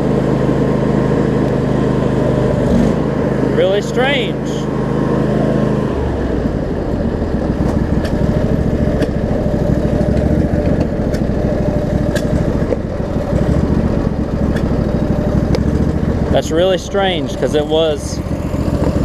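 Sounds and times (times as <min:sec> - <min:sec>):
riding mower engine running: 0:00.0 - 0:19.0.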